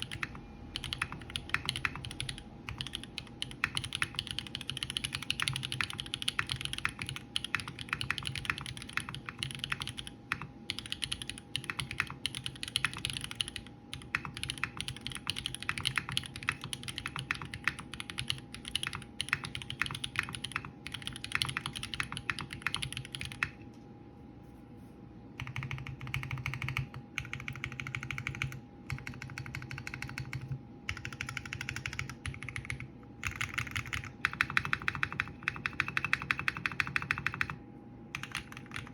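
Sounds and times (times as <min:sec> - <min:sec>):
fast typing on mechanical keyboard: 0:00.0 - 0:23.6, 0:25.4 - 0:38.9.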